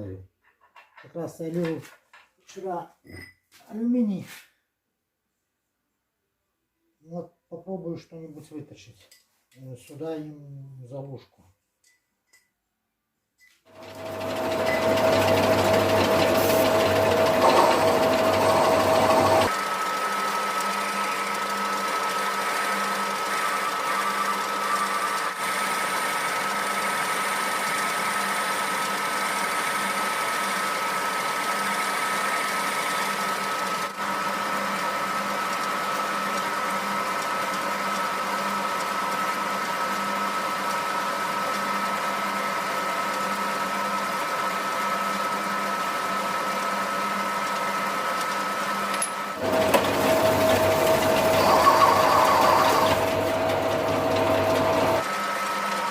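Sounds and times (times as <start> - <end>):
metal lathe motor whining: 13.8 - 45.8, 46.5 - 55.9.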